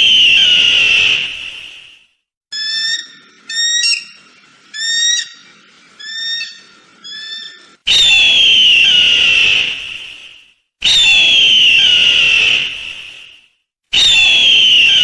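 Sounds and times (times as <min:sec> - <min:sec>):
eagle chirping: 0:02.5 - 0:07.8.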